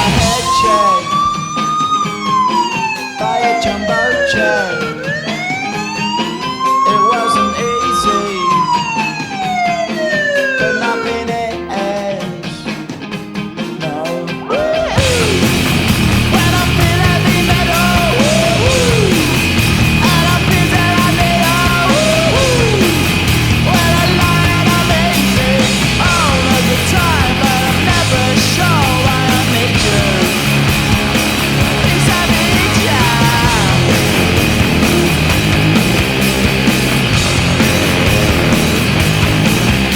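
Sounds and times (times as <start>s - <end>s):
steady high tone: 0.0s - 11.4s, 14.7s - 39.9s
hard rock song with vocals: 0.0s - 39.9s.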